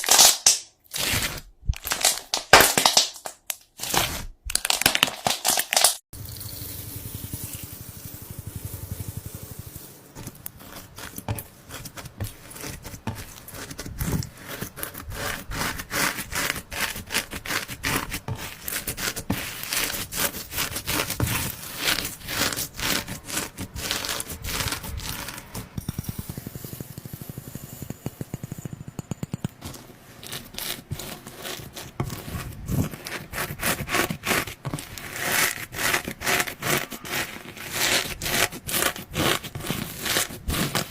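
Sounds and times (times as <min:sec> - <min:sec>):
slime crackling and popping: 0:00.0 - 0:06.0.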